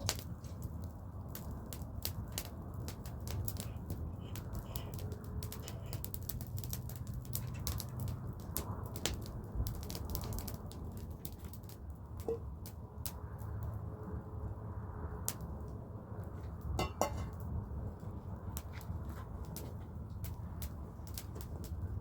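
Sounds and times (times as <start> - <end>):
sharp crackles and clicks: 0.0 - 13.8, 18.5 - 22.0.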